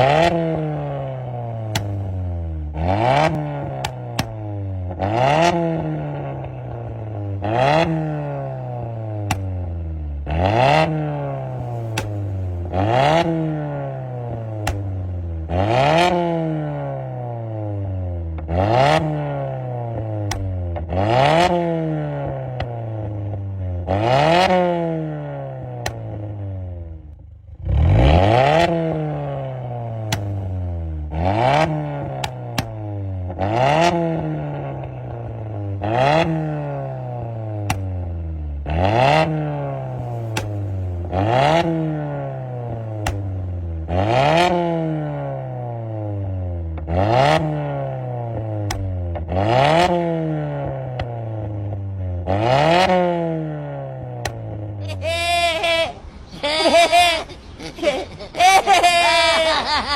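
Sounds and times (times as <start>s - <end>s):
car engine revving: 0.0s - 56.3s.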